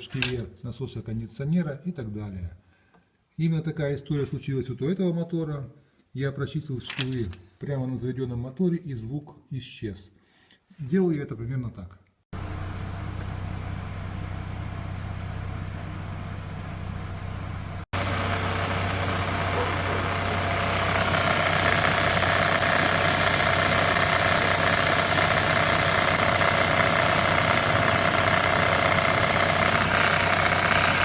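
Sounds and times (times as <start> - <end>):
car engine idling: 12.4 - 23.9.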